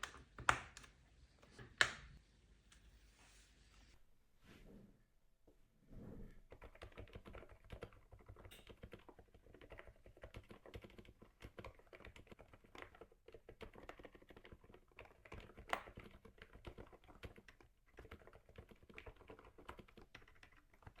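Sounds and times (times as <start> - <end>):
muffled keyboard keystrokes: 0.0 - 2.2, 6.5 - 21.0.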